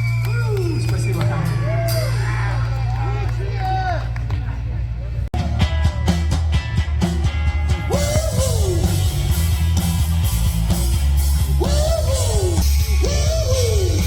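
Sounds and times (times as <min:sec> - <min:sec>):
rock song with singing: 0:05.4 - 0:14.0.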